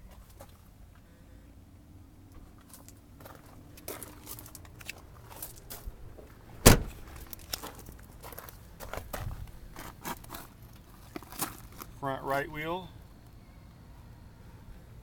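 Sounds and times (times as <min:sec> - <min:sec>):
handling clicks and rustles: 0:02.4 - 0:12.0
car door shutting: 0:06.6 - 0:07.2.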